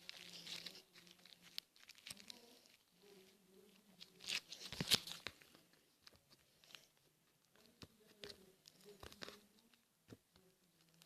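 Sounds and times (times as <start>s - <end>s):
slime crackling and popping: 0.0s - 2.8s, 4.0s - 6.9s.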